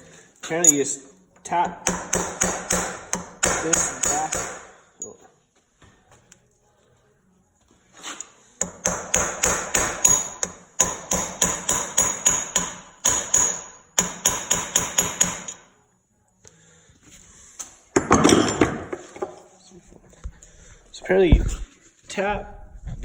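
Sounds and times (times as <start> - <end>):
hammer striking metal: 1.8 - 5.1, 8.6 - 15.7.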